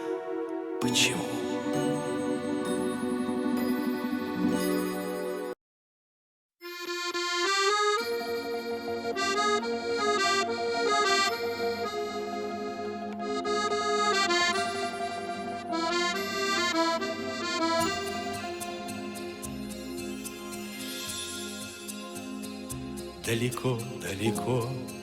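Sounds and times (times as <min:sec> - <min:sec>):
accordion playing: 0:00.0 - 0:05.6, 0:06.6 - 0:19.8.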